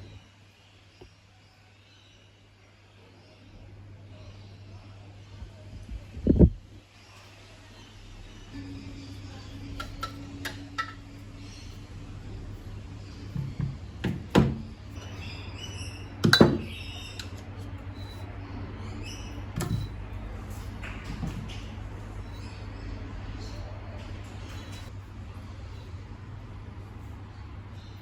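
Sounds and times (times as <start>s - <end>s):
steady low hum: 2.3s - 28.0s
metal parts and tools knocking: 9.8s - 11.0s.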